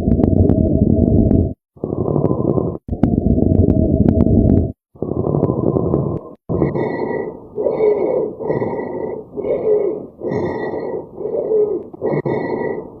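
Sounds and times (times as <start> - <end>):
wheezing breaths: 6.7 - 13.0.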